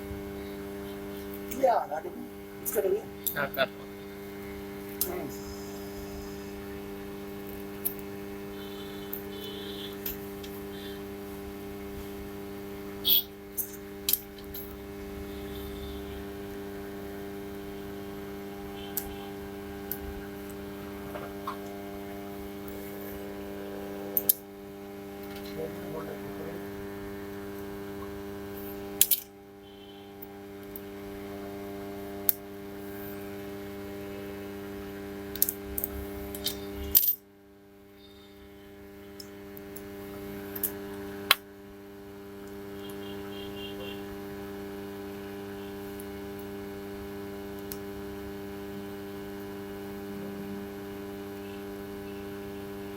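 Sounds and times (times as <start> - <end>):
electrical hum: 0.0 - 52.9
tools and small parts clicking: 29.0 - 29.3.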